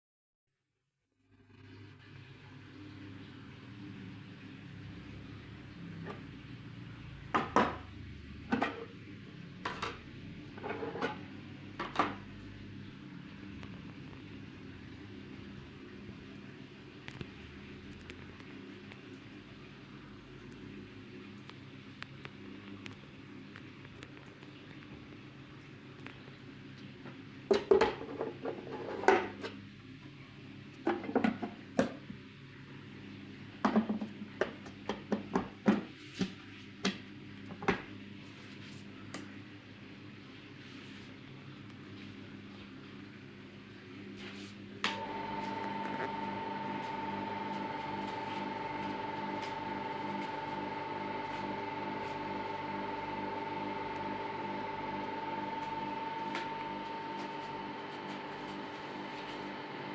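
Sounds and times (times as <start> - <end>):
steady low hum: 44.9 - 59.9.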